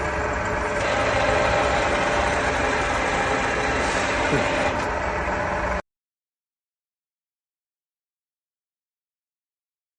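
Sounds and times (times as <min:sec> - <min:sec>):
milling machine motor hum: 0:00.0 - 0:05.8.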